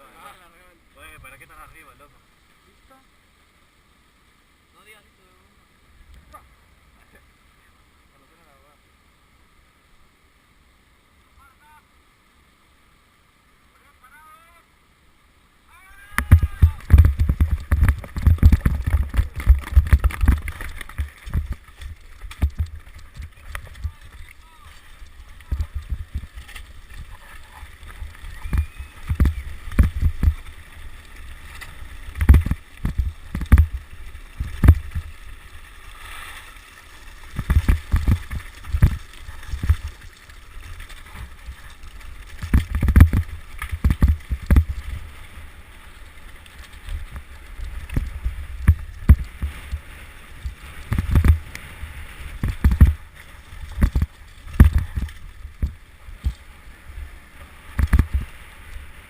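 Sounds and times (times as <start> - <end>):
wind buffeting microphone: 16.2 - 30.6
bike thumps and rattles: 16.4 - 21.6, 32.2 - 33.8, 42.4 - 44.8.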